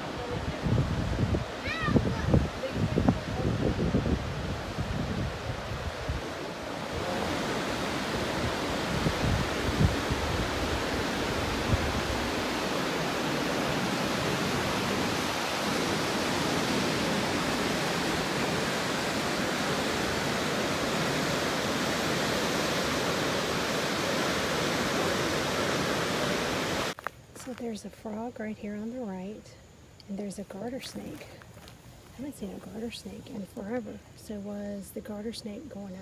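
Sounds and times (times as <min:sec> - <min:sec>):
waterfall rushing: 0:00.0 - 0:27.0.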